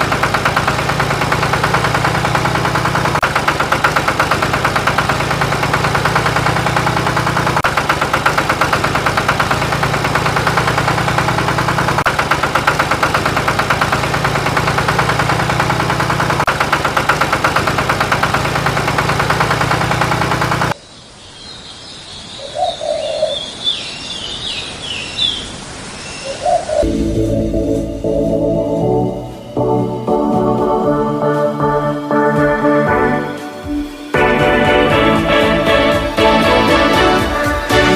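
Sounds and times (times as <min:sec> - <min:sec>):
engine running with knocking pulses: 0:00.0 - 0:20.8, 0:26.8 - 0:37.9
bird chirps: 0:20.8 - 0:26.9.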